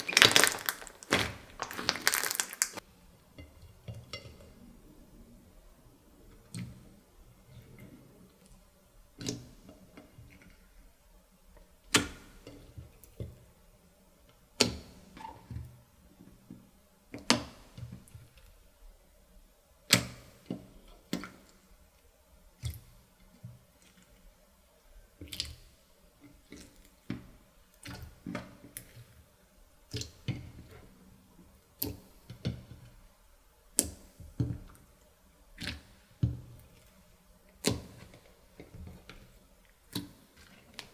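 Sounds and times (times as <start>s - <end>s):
slime squelches: 0.0s - 2.8s.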